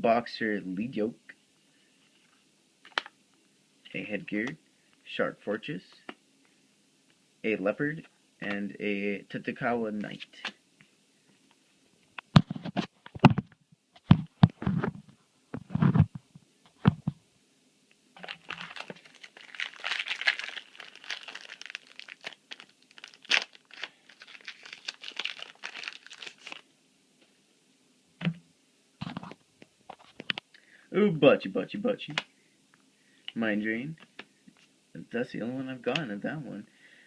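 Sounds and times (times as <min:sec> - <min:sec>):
foil wrapper tearing and crinkling: 0:18.2 - 0:26.6.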